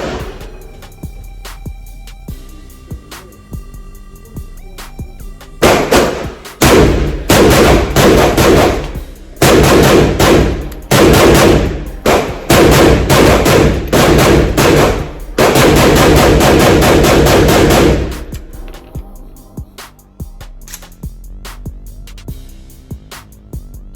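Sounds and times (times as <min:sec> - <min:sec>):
pistol gunshots: 0:05.6 - 0:18.4.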